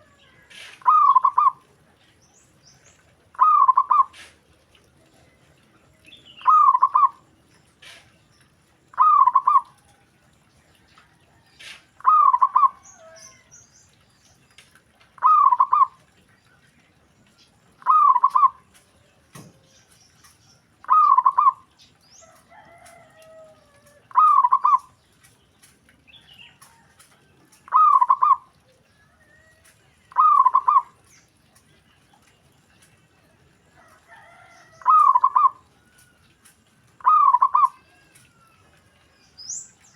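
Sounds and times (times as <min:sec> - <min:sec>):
dove cooing: 0:00.0 - 0:01.7, 0:03.3 - 0:04.4, 0:06.4 - 0:08.1, 0:08.9 - 0:10.0, 0:11.6 - 0:13.4, 0:15.2 - 0:16.1, 0:17.8 - 0:18.6, 0:20.8 - 0:21.8, 0:22.5 - 0:25.0, 0:27.6 - 0:28.9, 0:30.1 - 0:31.0, 0:33.8 - 0:35.8, 0:37.0 - 0:38.0.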